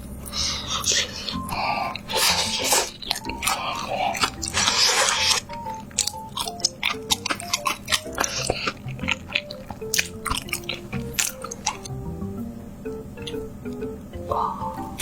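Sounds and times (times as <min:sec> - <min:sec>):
crunchy chewing and biting: 0:00.0 - 0:11.9
light background music: 0:00.1 - 0:15.0.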